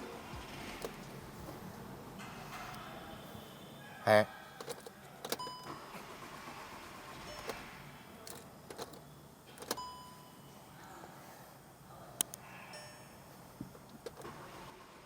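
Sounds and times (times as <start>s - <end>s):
sharp clicks and light knocks: 4.6s - 5.5s.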